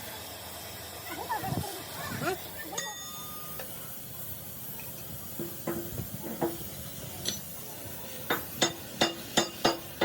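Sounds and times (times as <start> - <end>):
hammer clanking on steel: 8.3 - 10.0.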